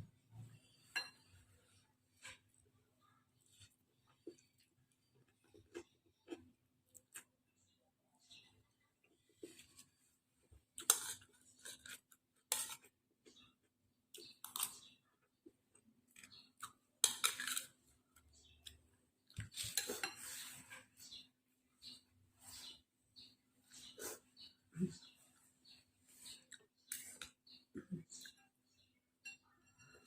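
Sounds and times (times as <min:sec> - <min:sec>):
cutlery clinking against a bowl: 0:00.8 - 0:01.4, 0:10.8 - 0:13.0, 0:16.2 - 0:17.8, 0:19.4 - 0:20.6, 0:29.2 - 0:30.0.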